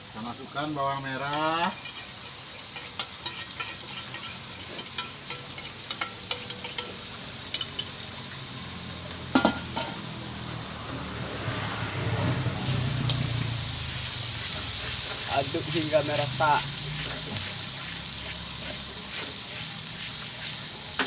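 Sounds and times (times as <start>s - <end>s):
garlic sizzling in hot oil: 0.0s - 21.0s
spatula scraping pan: 1.3s - 7.9s, 13.6s - 21.0s.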